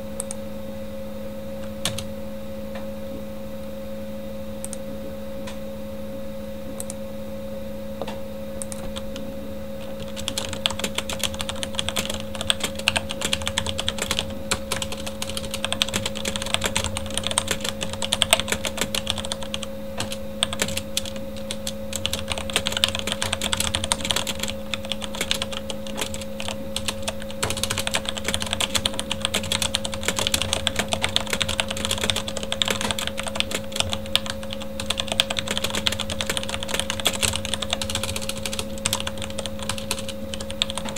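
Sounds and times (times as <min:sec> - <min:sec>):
computer fan hum: 0:00.0 - 0:40.9
mechanical keyboard typing: 0:01.8 - 0:02.1, 0:08.6 - 0:09.2, 0:09.8 - 0:40.9.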